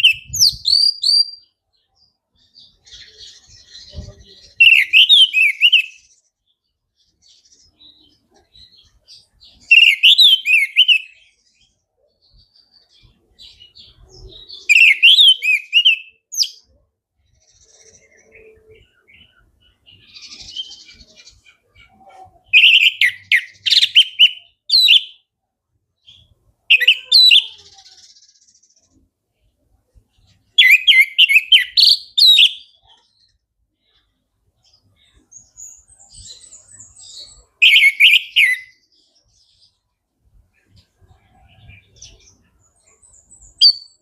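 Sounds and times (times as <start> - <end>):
thrush whistled song: 0.0 - 1.4, 3.9 - 6.0, 9.6 - 11.2, 14.6 - 16.6, 22.6 - 25.2, 30.6 - 32.7, 37.6 - 38.8
bird twittering: 0.0 - 1.5, 2.6 - 6.1, 9.5 - 11.3, 13.5 - 16.6, 22.5 - 25.2, 30.5 - 32.8, 37.6 - 38.8.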